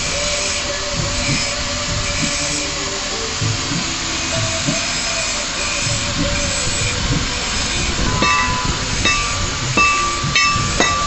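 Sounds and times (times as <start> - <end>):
steady rushing hiss: 0.0 - 11.0
hammer ringing on anvil: 8.1 - 11.0.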